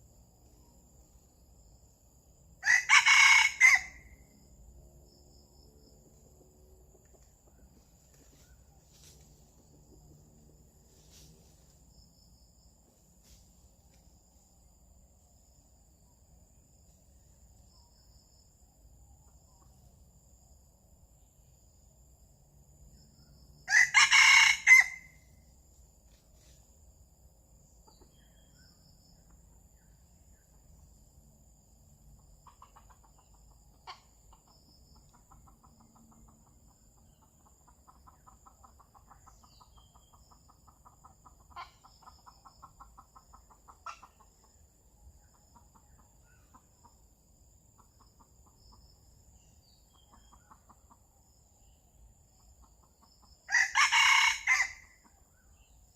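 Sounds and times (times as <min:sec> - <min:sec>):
rooster crowing: 0:02.6 - 0:04.2, 0:23.7 - 0:25.2, 0:53.5 - 0:55.0.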